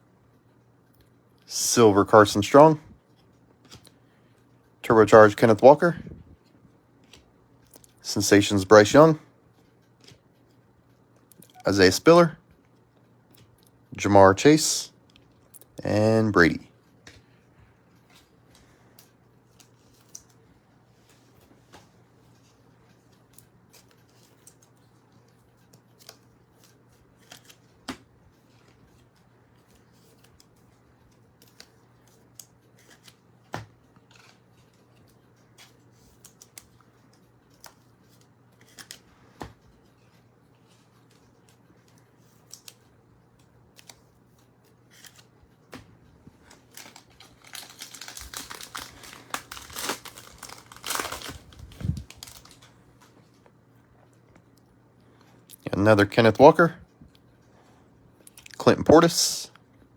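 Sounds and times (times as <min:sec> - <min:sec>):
foil pack crinkling and tearing: 0:46.4 - 0:52.8.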